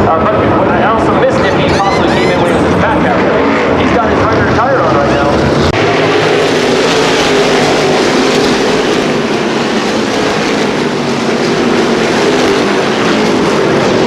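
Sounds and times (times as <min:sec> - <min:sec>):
race car engines at speed: 0:00.0 - 0:14.0.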